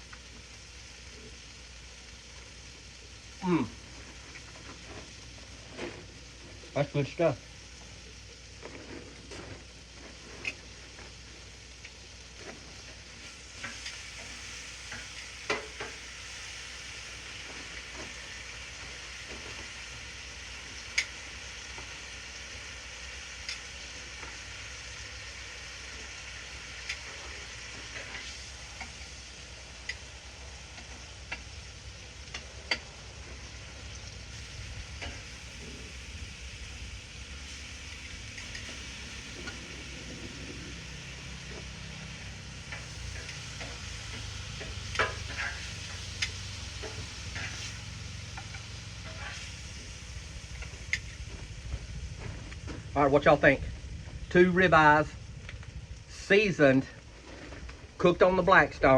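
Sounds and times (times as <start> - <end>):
steaks sizzling on a griddle: 0.0 - 58.9
fat ticking and popping: 28.6 - 49.2, 49.8 - 53.0.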